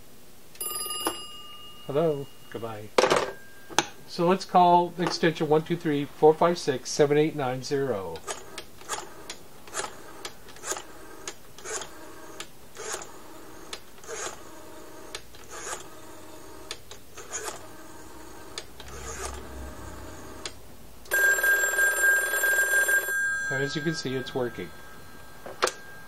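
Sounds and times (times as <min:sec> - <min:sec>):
telephone bell ringing: 0:00.6 - 0:03.8, 0:21.1 - 0:26.0
rotary dial clicking and whirring: 0:08.2 - 0:21.2.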